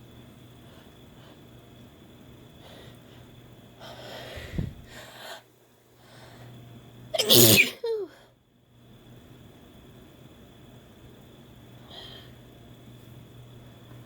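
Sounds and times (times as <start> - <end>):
woman breathing in noisily: 2.6 - 6.6
loud sneeze: 7.2 - 8.0.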